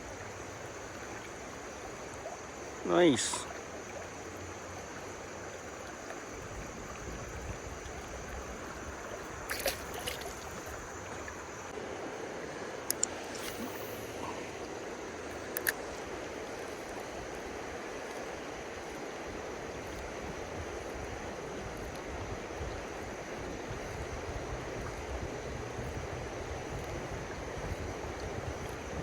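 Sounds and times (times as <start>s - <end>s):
river water rushing: 0.0s - 19.8s
sharp clicks: 12.9s - 13.8s, 15.5s - 15.8s.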